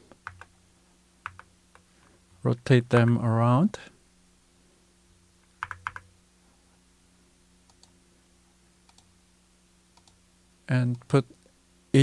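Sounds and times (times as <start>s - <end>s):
faint steady hum: 0.0s - 12.0s
computer keyboard keystrokes: 0.2s - 0.5s, 1.2s - 1.5s, 5.6s - 6.1s, 8.9s - 9.1s, 10.0s - 10.2s.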